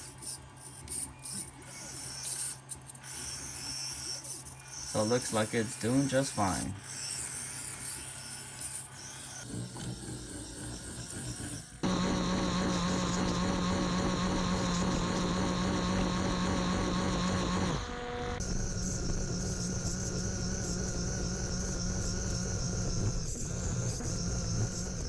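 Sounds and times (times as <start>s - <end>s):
small electric motor whining: 0.0s - 25.0s
steady hum: 9.4s - 25.0s.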